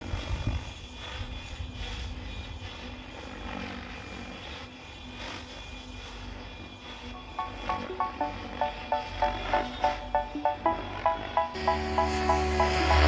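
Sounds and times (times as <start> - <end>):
model helicopter engine and rotor whine: 0.0 - 7.2, 11.7 - 13.0.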